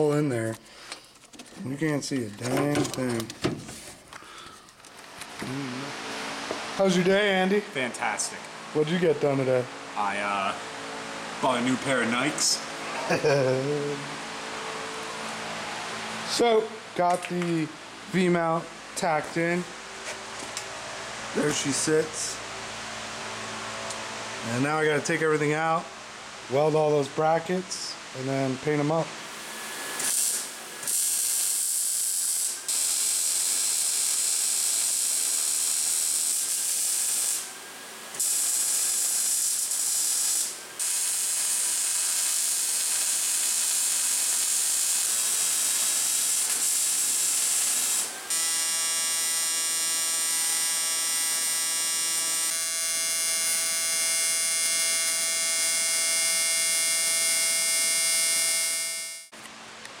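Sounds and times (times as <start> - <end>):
welding arc hissing: 29.2 - 59.3.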